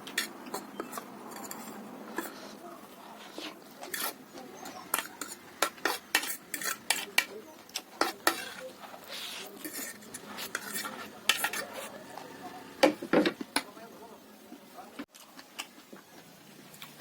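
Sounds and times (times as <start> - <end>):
cutlery clinking against bowl: 0.0 - 2.4, 3.8 - 8.7, 9.6 - 12.2.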